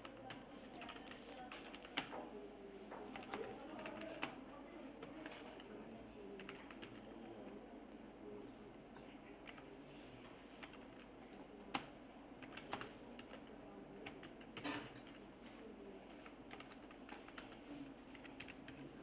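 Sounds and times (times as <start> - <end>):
computer keyboard typing: 0.0 - 2.3, 3.0 - 5.8, 6.4 - 7.2, 9.4 - 15.3, 16.0 - 19.0.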